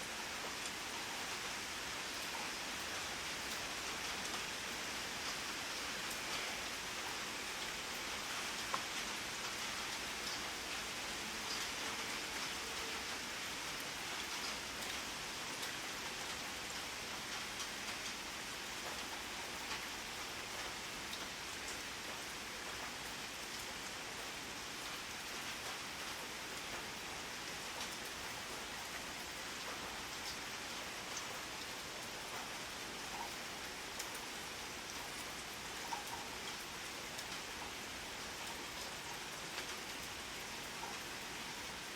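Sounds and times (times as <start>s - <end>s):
rain hissing on a surface: 0.0s - 41.9s.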